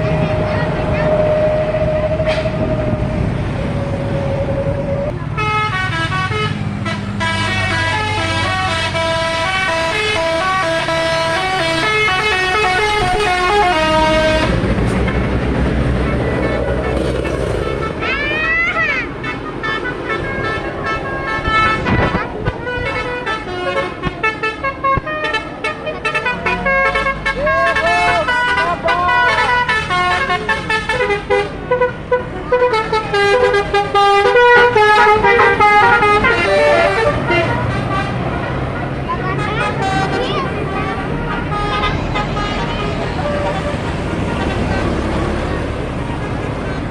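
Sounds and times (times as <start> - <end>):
bus engine running: 0.0 - 46.9
multi-tone air horn melody: 4.3 - 15.3, 19.2 - 44.7.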